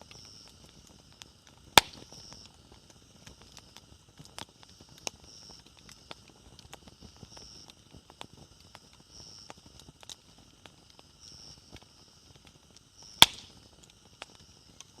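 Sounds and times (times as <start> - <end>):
wood fire crackling: 0.0 - 15.0
loud sharp pop: 1.8 - 2.1, 13.2 - 13.5.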